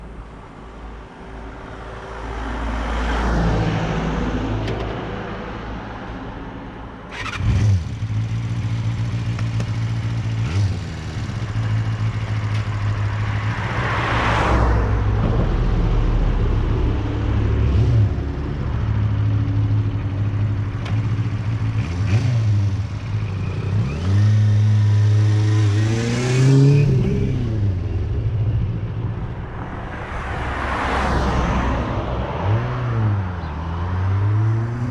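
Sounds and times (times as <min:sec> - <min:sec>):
vehicles passing by: 0:00.0 - 0:34.9
engine revving: 0:20.8 - 0:28.6.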